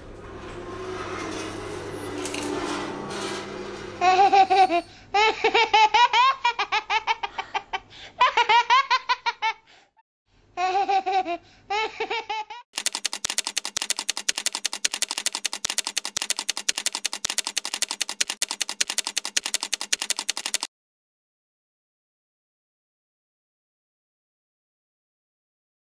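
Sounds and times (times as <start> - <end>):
young child laughing: 4.0 - 9.6, 10.6 - 12.6
fast even clicks: 12.8 - 20.7.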